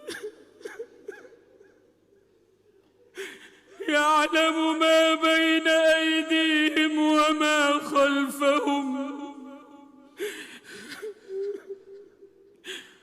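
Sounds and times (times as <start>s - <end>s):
man reciting melodically: 3.2s - 13.0s
breath sounds: 10.2s - 11.7s, 12.6s - 13.0s.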